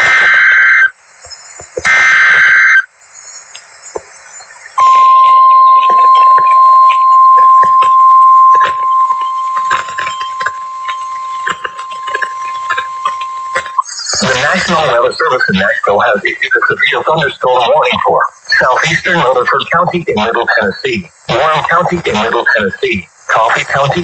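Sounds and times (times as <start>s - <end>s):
warbling data tones screech: 0.0s - 20.7s
crackly radio static: 0.0s - 24.0s
steady warning alarm tone: 4.8s - 15.6s.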